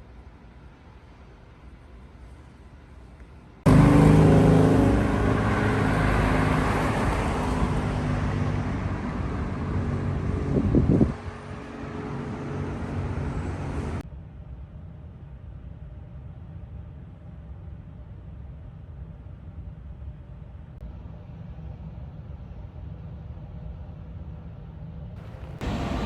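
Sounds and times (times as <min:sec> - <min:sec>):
vehicle engine and road noise: 0:00.9 - 0:14.0, 0:25.2 - 0:26.0.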